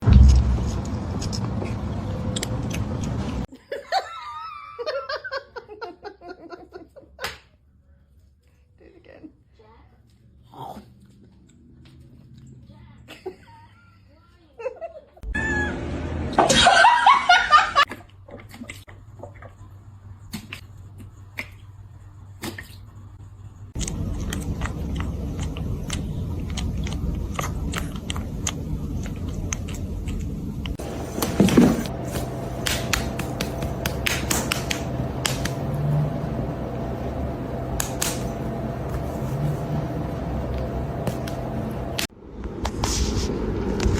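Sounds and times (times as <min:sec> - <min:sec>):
pet chewing crunchily: 0:23.7 - 0:36.0.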